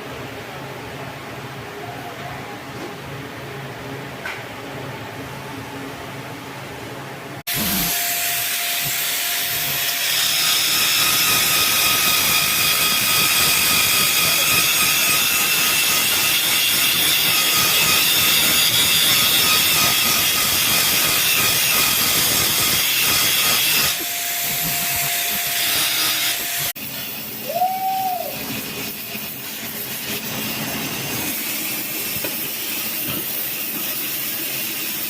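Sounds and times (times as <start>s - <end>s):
welding arc hissing: 7.5s - 35.0s.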